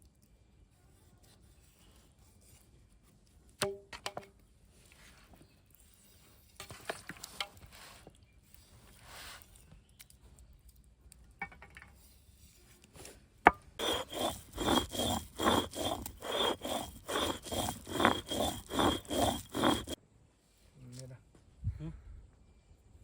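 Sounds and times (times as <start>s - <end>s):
stone grinding scraping strokes: 13.8s - 20.0s.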